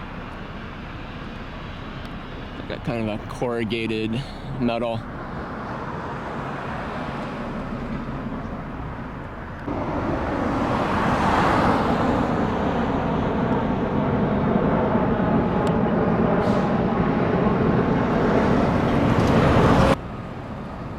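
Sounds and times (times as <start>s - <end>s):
road traffic hum: 0.0s - 20.9s
vehicle passing close by: 3.7s - 20.0s.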